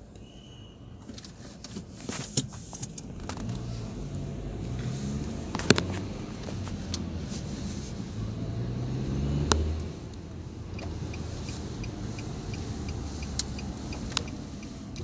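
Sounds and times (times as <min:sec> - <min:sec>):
car engine and road noise: 0:00.9 - 0:15.0
scattered clicks: 0:10.8 - 0:15.0.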